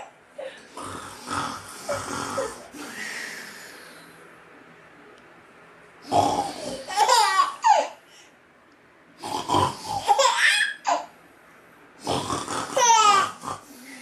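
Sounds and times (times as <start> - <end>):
baby giggling: 6.8 - 8.0.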